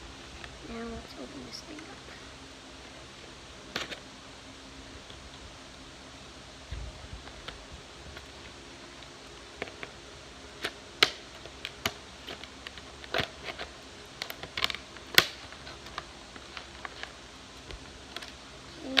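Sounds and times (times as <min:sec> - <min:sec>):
stiff packaging clicks and snaps: 0:10.6 - 0:19.0.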